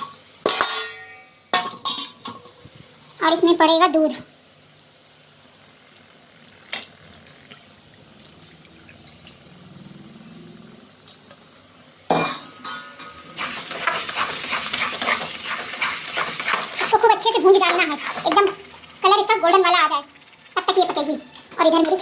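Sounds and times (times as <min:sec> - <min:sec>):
metal cookware clattering: 0:00.0 - 0:02.5, 0:12.1 - 0:18.6
spoon scraping in a pan: 0:12.6 - 0:18.5.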